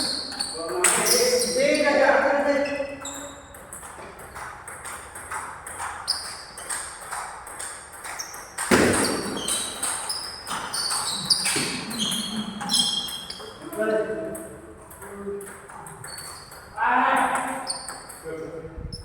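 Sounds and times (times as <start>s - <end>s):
ping pong ball clicking: 3.2s - 11.7s, 12.6s - 18.3s.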